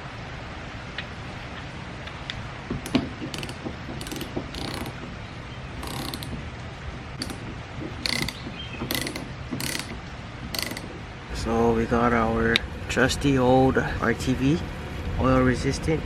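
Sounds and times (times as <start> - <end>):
ratchet wrench clicking: 2.9 - 5.0, 5.8 - 6.4, 7.2 - 7.4, 8.0 - 11.0.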